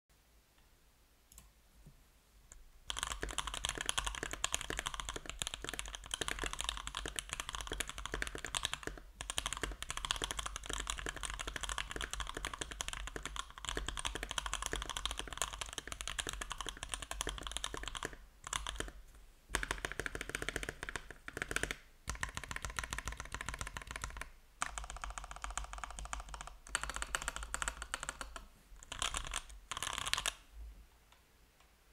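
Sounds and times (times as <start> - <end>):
mechanical keyboard typing: 2.9 - 30.4.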